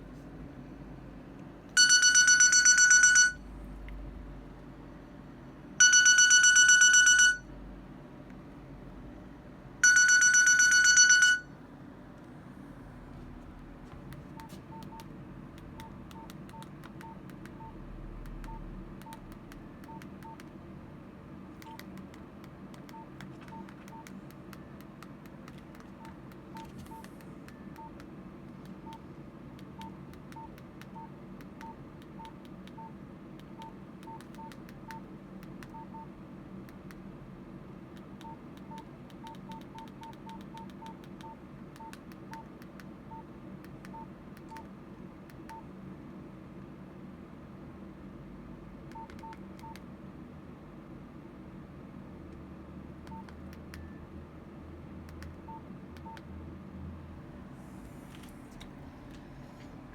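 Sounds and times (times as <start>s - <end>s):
buzzy phone beeps: 1.8s - 3.5s, 5.8s - 7.5s, 9.8s - 11.5s
keypad clicks: 14.1s - 20.6s, 21.6s - 29.0s, 29.6s - 35.8s, 38.0s - 42.9s, 43.6s - 44.7s, 48.9s - 49.9s, 53.0s - 53.9s.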